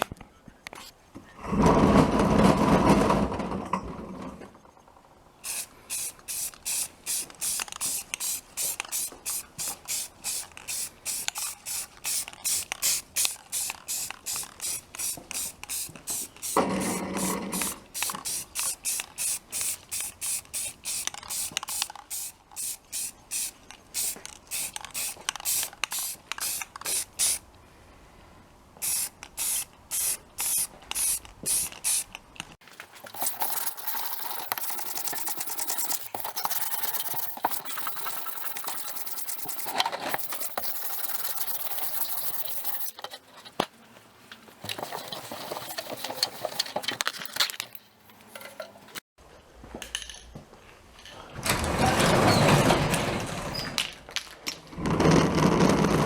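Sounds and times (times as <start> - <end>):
spray paint can bursts: 5.4 - 27.4, 28.8 - 32.1, 33.1 - 43.0.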